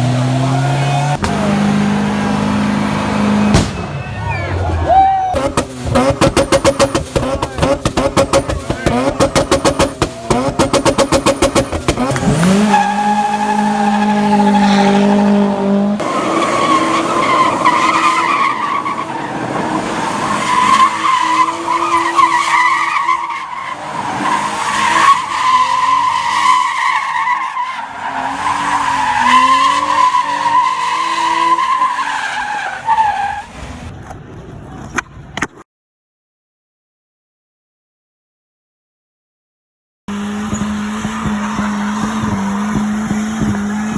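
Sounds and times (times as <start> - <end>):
engine revving: 0.0 - 4.8, 5.4 - 22.8, 27.9 - 31.6, 40.1 - 43.9
car tyres squealing: 0.0 - 33.9, 40.1 - 43.9.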